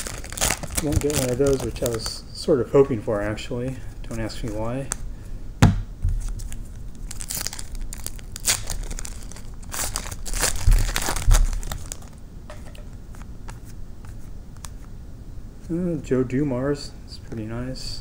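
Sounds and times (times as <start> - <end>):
wrapper tearing and crinkling: 0.0 - 2.2, 6.3 - 12.2.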